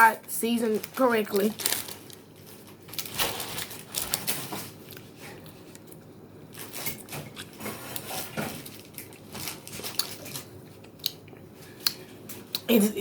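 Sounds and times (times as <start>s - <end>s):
takeout packaging handled: 0.7s - 5.4s.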